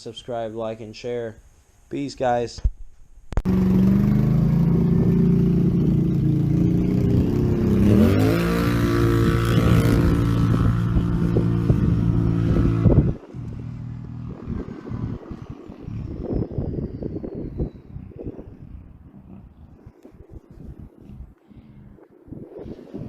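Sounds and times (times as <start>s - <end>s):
atv engine revving: 3.4s - 19.7s.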